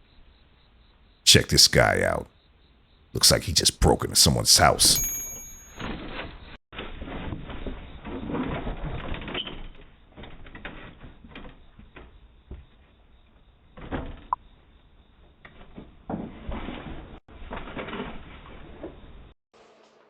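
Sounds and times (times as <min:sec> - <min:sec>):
brief high chirp: 0:04.9 - 0:05.8.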